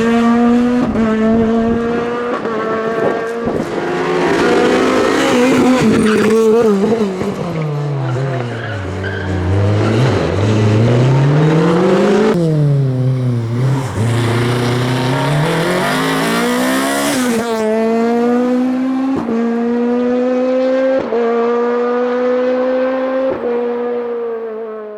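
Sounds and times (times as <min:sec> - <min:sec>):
rally car engine revving: 0:00.0 - 0:24.9
gear changes: 0:08.3 - 0:17.6.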